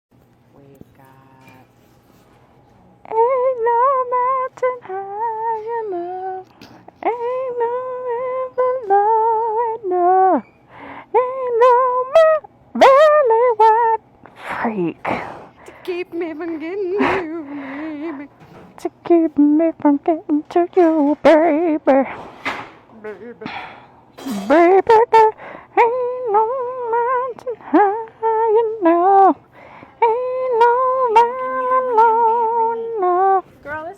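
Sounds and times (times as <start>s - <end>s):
person singing wordless melody: 3.0s - 22.1s, 22.9s - 33.6s.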